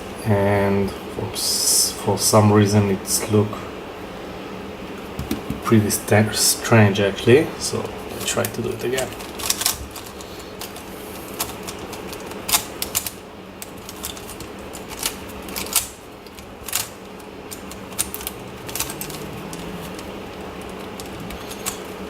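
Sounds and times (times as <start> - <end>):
puzzle cube clicking: 11.4 - 22.0.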